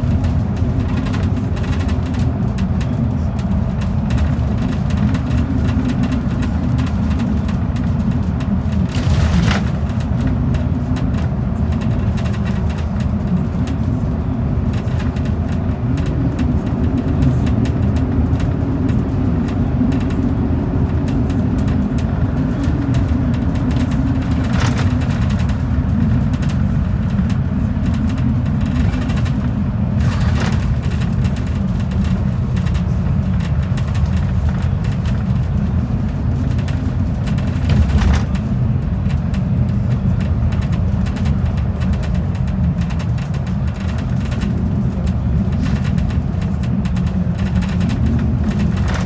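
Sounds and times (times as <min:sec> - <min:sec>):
bus engine and road rumble: 0:00.0 - 0:49.0
knocks and rattles: 0:04.1 - 0:14.0, 0:21.1 - 0:35.5, 0:36.1 - 0:42.1, 0:42.8 - 0:49.0.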